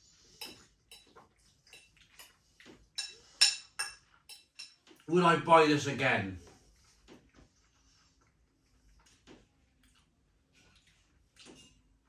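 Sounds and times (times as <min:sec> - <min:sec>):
cutlery clinking on a dish: 0:00.4 - 0:02.4, 0:03.0 - 0:05.1.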